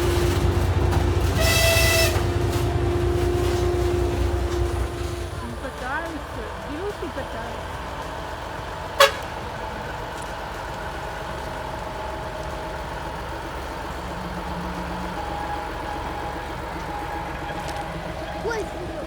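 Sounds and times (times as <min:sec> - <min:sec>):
locomotive running: 0:00.0 - 0:19.0.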